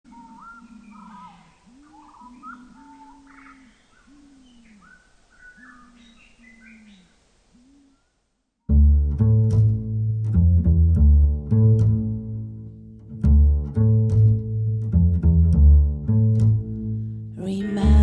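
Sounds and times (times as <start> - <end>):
low repeated bird calls: 0.0 - 8.3
high bird chirps: 0.1 - 7.2
music with bowed low strings: 8.7 - 18.0.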